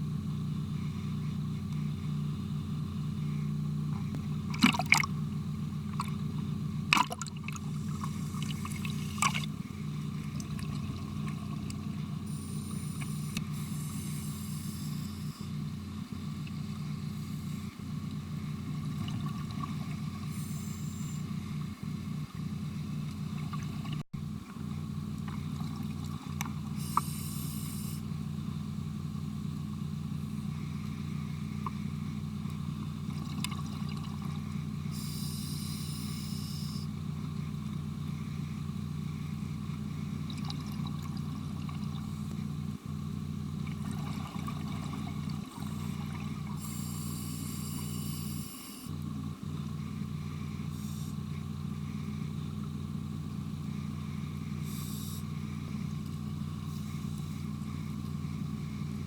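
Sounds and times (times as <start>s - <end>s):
low underwater hum: 0.0s - 59.0s
exhaled bubbles hissing: 7.0s - 24.6s, 25.2s - 28.1s, 32.6s - 36.9s, 39.1s - 42.6s, 43.5s - 52.8s, 53.5s - 59.0s.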